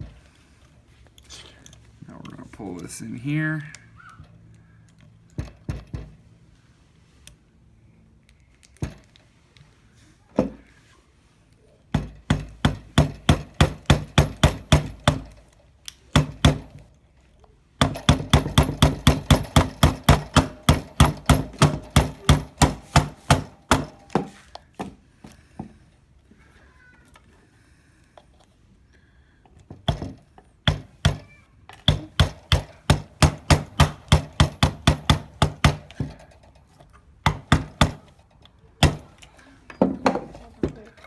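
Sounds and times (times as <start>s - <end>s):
hammer tapping metal pin: 17.8s - 24.9s, 29.9s - 36.4s.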